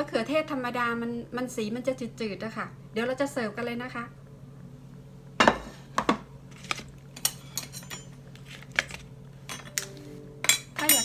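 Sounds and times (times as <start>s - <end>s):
utensils and dishes clinking: 6.7s - 11.0s.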